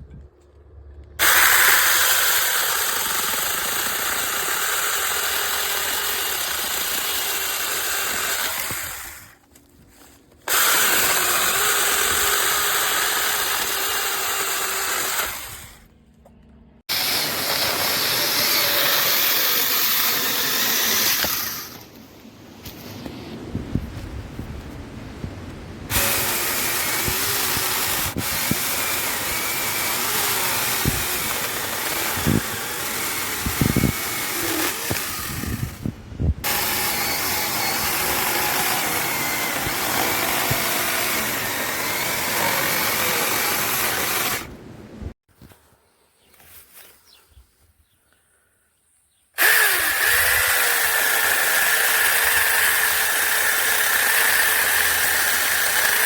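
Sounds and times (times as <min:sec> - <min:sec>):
electric chainsaw whining: 0:01.2 - 0:09.4, 0:10.4 - 0:16.0, 0:16.9 - 0:21.9, 0:25.9 - 0:44.6, 0:49.4 - 0:56.0.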